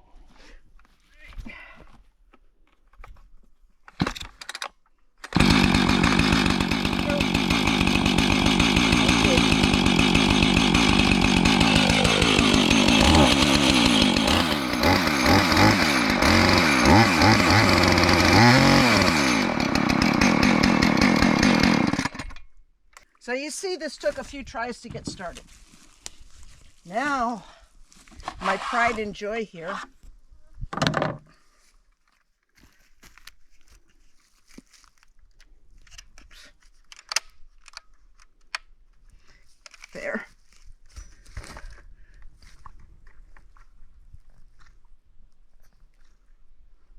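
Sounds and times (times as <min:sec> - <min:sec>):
chainsaw pull-starting: 0:04.0 - 0:22.4
chainsaw idling and revving: 0:05.3 - 0:22.4.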